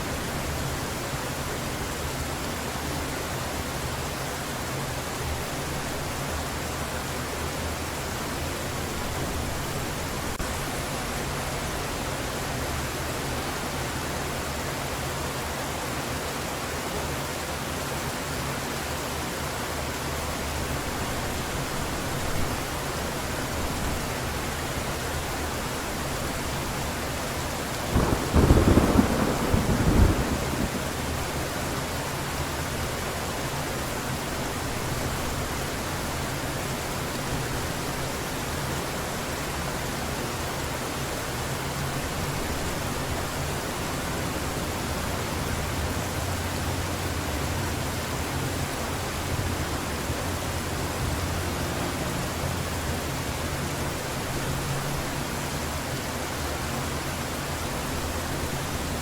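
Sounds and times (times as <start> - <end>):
heavy rain falling: 0.0 - 59.0
thunder crack and rumble: 27.8 - 31.5.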